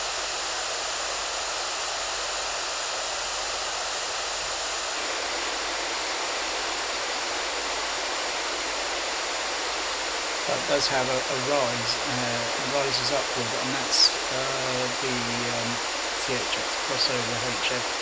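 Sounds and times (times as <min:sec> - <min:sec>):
pink noise hiss: 0:04.9 - 0:18.0.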